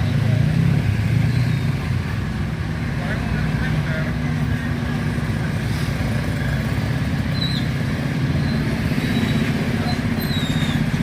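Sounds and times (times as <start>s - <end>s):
vehicle engines rumbling: 0.0s - 11.0s.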